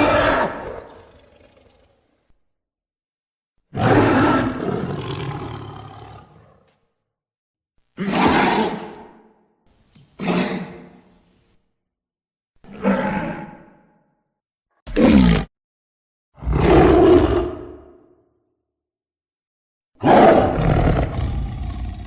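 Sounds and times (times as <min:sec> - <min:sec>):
cartoon rhino roars: 0:00.0 - 0:02.1, 0:03.7 - 0:06.7, 0:08.0 - 0:09.1, 0:12.6 - 0:13.9, 0:14.9 - 0:15.5, 0:16.4 - 0:18.2, 0:20.0 - 0:22.0.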